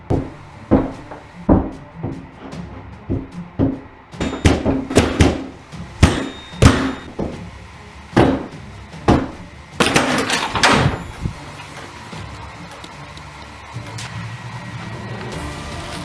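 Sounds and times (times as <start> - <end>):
door pounded with heavy bangs: 0.1 - 7.5, 8.1 - 11.4.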